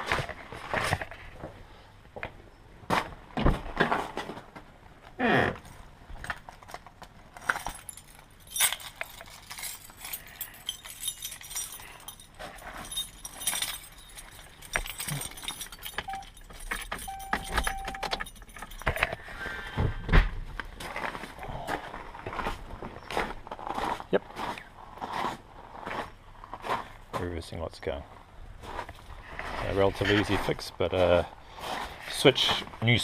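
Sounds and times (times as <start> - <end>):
keys jangling: 7.4 - 19.2.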